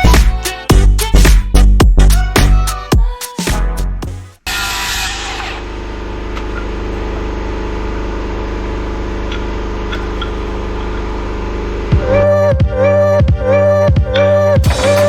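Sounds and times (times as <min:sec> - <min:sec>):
lathe motor running: 0:04.5 - 0:12.0.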